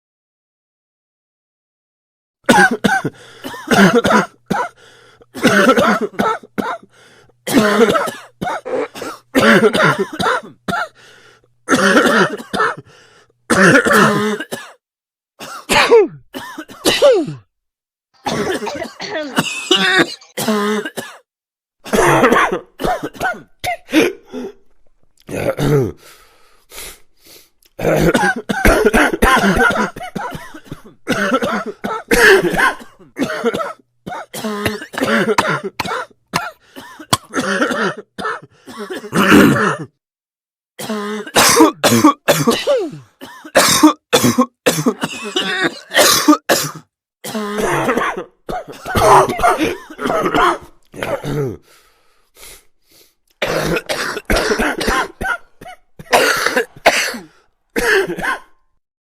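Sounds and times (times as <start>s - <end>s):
person coughing hard: 2.4s - 6.9s, 7.5s - 11.0s, 11.7s - 12.9s, 13.5s - 14.8s, 15.4s - 17.5s, 18.2s - 24.2s, 25.3s - 26.0s, 27.8s - 40.0s, 40.8s - 51.6s, 53.4s - 58.6s
throat clearing: 7.5s - 10.5s, 15.5s - 17.5s, 18.2s - 21.1s, 21.9s - 24.5s, 25.2s - 26.0s, 27.8s - 33.5s, 38.8s - 40.0s, 40.8s - 51.6s.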